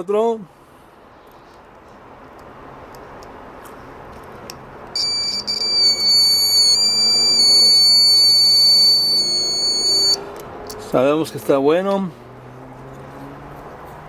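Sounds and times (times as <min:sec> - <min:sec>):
buzzer high steady tone: 0:05.0 - 0:10.2.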